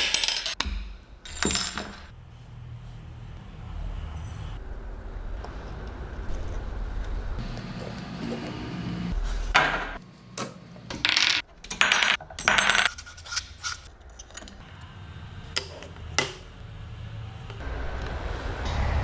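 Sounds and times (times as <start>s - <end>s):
metal clinking and rattling: 1.2s - 2.1s, 11.0s - 14.7s.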